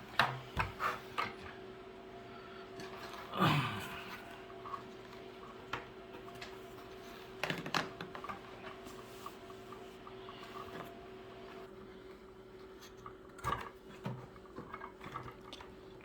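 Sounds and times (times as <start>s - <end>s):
steady low hum: 0.0s - 7.4s.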